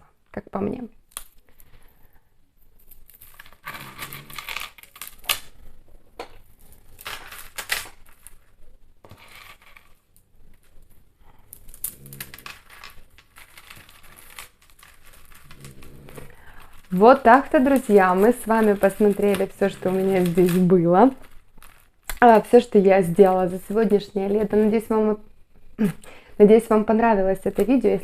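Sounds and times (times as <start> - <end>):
beads clicking and rattling: 2.7 - 5.5, 6.5 - 10.8, 11.5 - 25.0.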